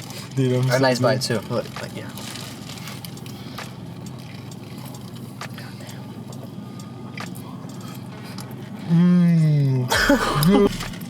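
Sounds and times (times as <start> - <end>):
steady low hum: 0.0 - 11.0
chewing crispy food: 1.4 - 5.7.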